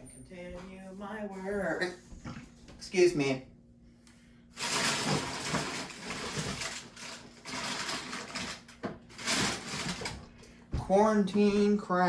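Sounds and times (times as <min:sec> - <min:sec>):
packaging crinkling and rustling: 0:04.6 - 0:10.4.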